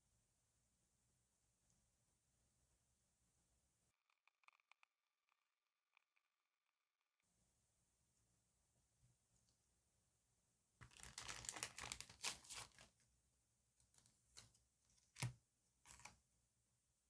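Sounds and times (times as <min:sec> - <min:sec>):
paper crinkling and rustling: 0:10.8 - 0:13.0, 0:15.9 - 0:16.1.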